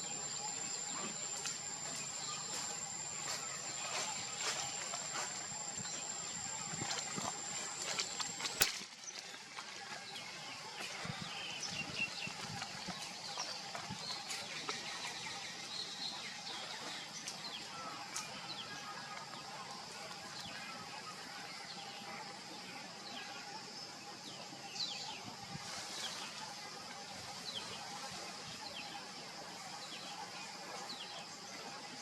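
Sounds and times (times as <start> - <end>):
high-pitched whine: 0.0 - 9.0
faint chirps: 0.0 - 32.0
click: 6.8 - 8.8.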